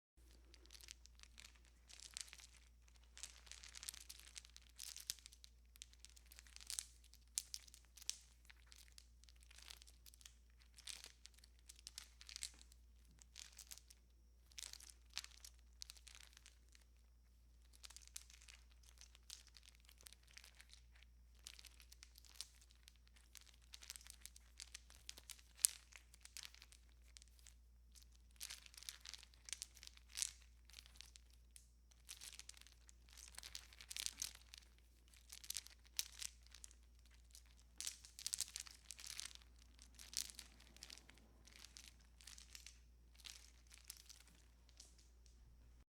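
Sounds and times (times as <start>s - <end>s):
faint low hum: 29.3s - 45.9s
light strand rustling and crinkling: 32.0s - 45.9s.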